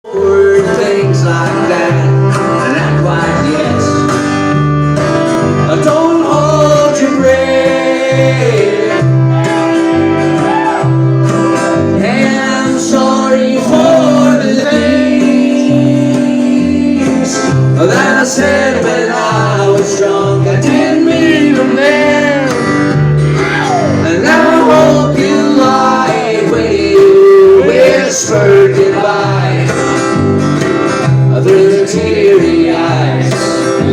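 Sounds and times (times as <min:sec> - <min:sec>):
strummed guitar: 0:00.0 - 0:33.9
plucked bass line: 0:00.1 - 0:33.9
sliding melody line: 0:11.0 - 0:33.9.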